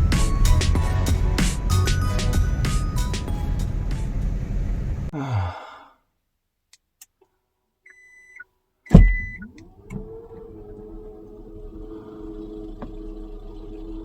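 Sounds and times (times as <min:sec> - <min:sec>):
car running with road noise: 0:00.0 - 0:05.1, 0:08.9 - 0:14.0
loud thump: 0:08.9 - 0:09.5
rising electronic hum: 0:08.9 - 0:14.0.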